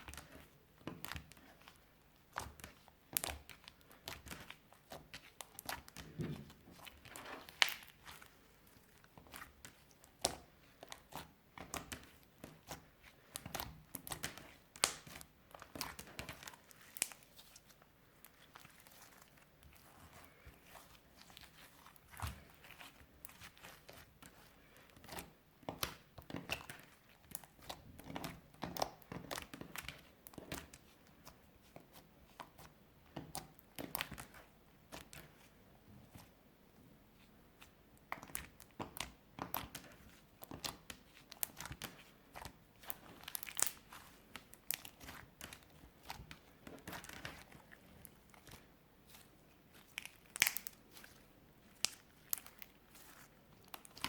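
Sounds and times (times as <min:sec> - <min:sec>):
slime squished and popping: 0:02.3 - 0:08.0, 0:13.3 - 0:17.2, 0:40.4 - 0:47.4, 0:49.1 - 0:54.0.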